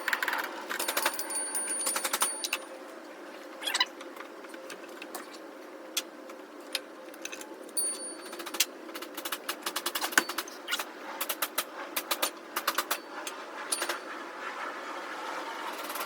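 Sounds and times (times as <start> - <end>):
metal tools clinking: 0.0 - 2.7, 7.2 - 8.6
ringing clinks: 0.0 - 2.8, 7.8 - 8.6.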